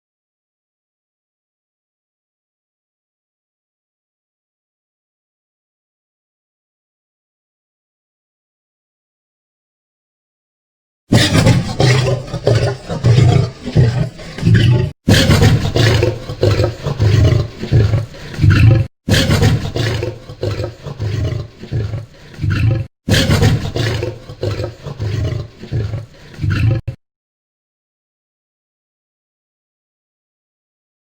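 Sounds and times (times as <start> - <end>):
large animal roaring: 11.1 - 27.0.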